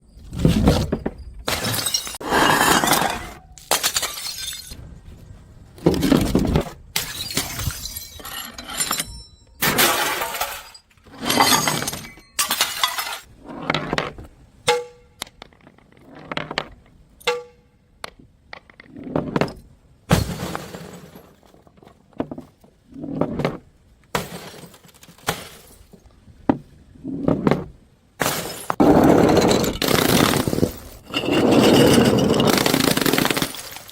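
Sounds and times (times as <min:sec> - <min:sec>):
glass bottles smashing: 0:01.5 - 0:04.8, 0:07.0 - 0:13.3, 0:20.1 - 0:21.4, 0:24.2 - 0:26.0, 0:28.2 - 0:33.9.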